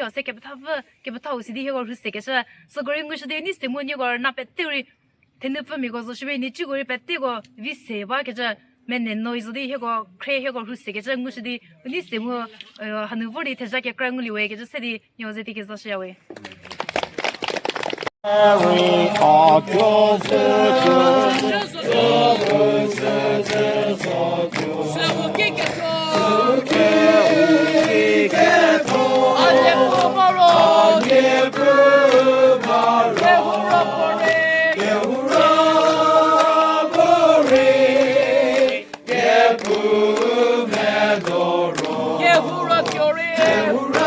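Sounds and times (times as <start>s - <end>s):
choir singing long notes: 18.2s - 44.0s.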